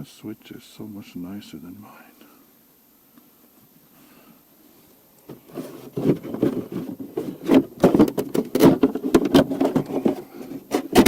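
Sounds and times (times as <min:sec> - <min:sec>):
plastic clicks and rattles: 0:06.0 - 0:11.0.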